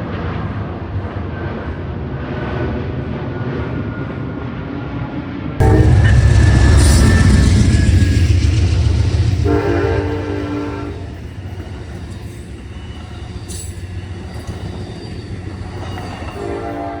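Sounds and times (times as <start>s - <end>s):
multi-tone train horn: 5.6s - 11.5s, 16.3s - 17.0s
deep train rumble: 5.6s - 17.0s.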